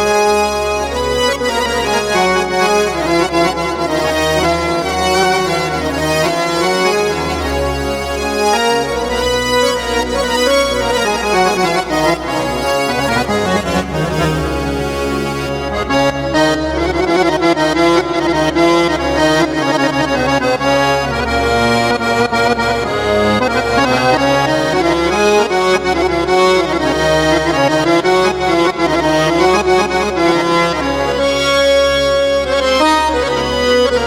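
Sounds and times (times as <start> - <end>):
accordion melody on keyboard: 0.0 - 34.0
low bass part: 12.5 - 16.3.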